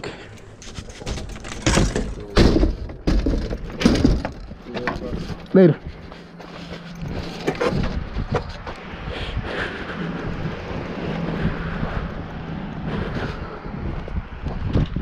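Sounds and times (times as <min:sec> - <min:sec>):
knocks and rattles: 0:00.6 - 0:05.5
wind buffeting microphone: 0:07.0 - 0:15.0.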